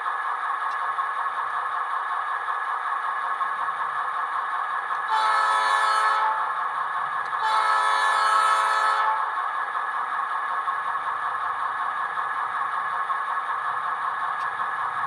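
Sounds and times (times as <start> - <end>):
diesel locomotive horn blasts: 5.0 - 6.6, 7.3 - 9.4.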